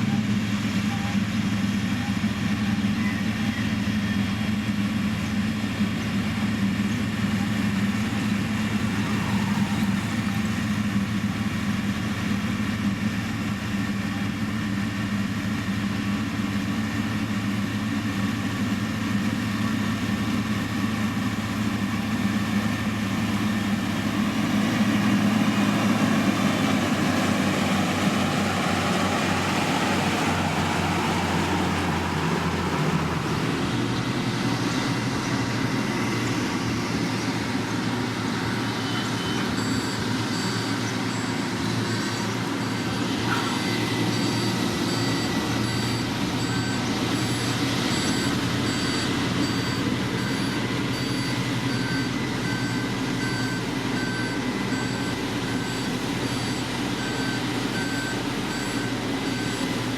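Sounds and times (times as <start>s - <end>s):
heavy machinery diesel engine: 0.0s - 59.9s
reversing alarm beeping: 37.8s - 59.9s.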